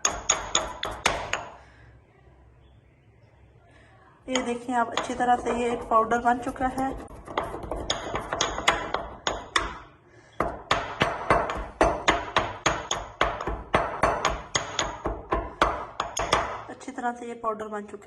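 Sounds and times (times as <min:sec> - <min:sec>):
pestle striking mortar: 0:00.0 - 0:01.6, 0:04.3 - 0:16.7.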